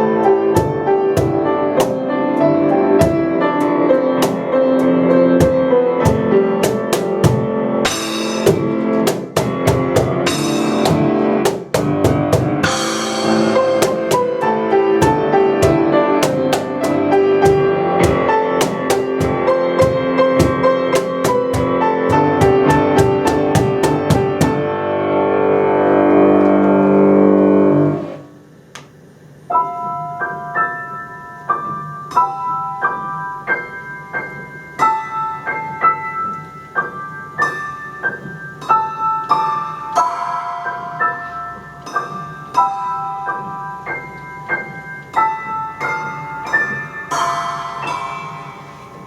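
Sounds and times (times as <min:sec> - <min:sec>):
fast percussion hits: 0:00.0 - 0:24.8, 0:46.6 - 0:49.0
solo piano melody: 0:00.0 - 0:49.0.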